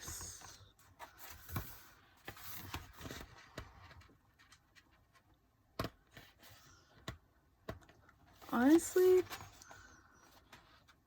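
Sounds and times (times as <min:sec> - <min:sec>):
paper pages rustling: 0:00.0 - 0:07.2.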